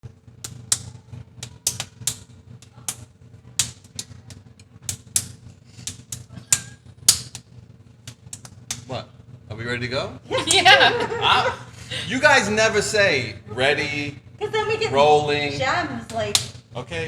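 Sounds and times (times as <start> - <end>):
faint steady hum: 0.0 - 17.0
hard objects clicking and tapping: 0.4 - 8.9, 16.1 - 16.6.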